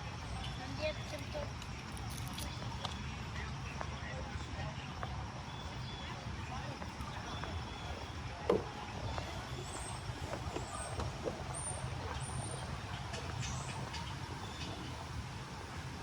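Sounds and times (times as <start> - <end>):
low rumble of city traffic: 0.0 - 16.0
brief knock: 8.5 - 8.8.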